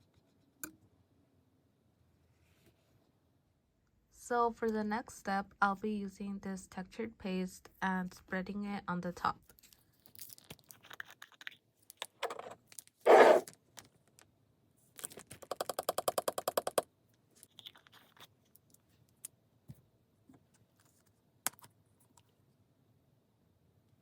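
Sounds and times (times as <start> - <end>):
tool scraping: 13.1 - 13.5.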